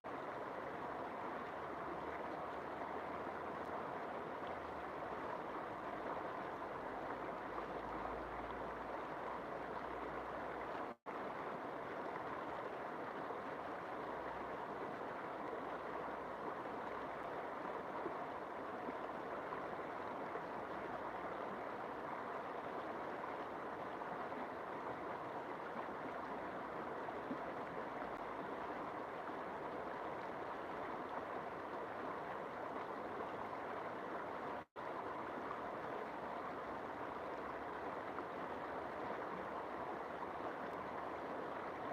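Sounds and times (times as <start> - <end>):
river water flowing: 0.1 - 41.9.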